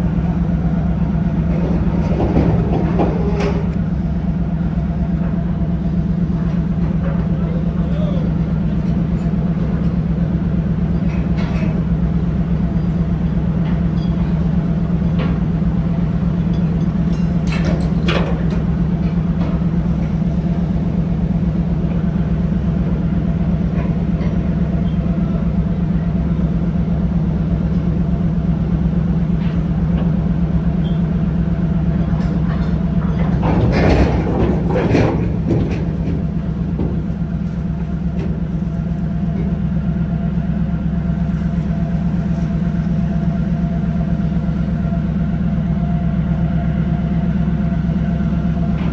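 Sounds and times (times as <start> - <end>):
boat engine droning: 0.0 - 48.9
metallic knocking and rattling: 33.1 - 39.6.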